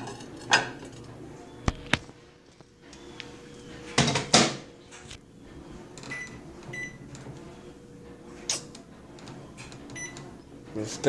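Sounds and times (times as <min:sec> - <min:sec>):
keypad beeps: 0:06.0 - 0:07.0, 0:09.9 - 0:10.2.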